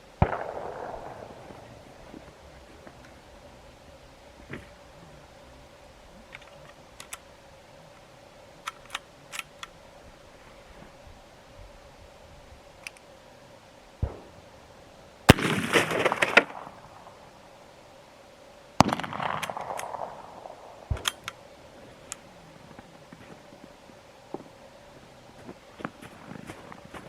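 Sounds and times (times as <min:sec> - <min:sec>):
rifle shots: 0:00.2 - 0:02.4, 0:15.3 - 0:17.4, 0:18.8 - 0:21.3.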